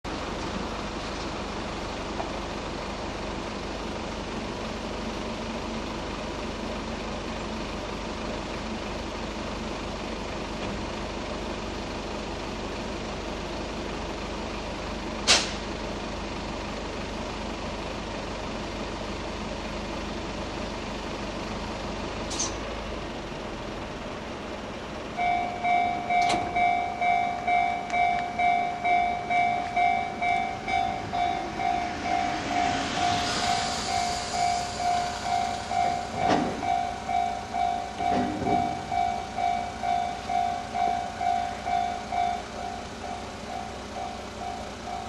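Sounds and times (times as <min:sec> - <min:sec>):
heavy vehicles idling: 0:00.1 - 0:45.0
sharp air hiss: 0:30.1 - 0:37.6.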